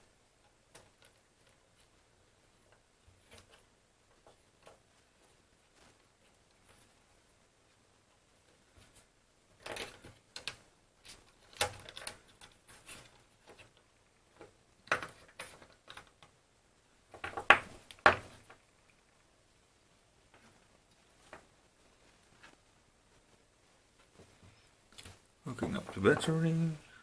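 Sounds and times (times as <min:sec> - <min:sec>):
small hard parts clicking and rattling: 0:08.8 - 0:16.4.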